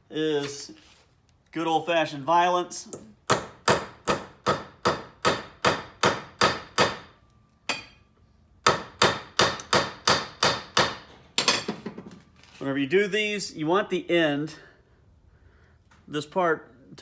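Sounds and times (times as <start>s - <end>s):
hammer striking metal lug: 3.3s - 11.9s.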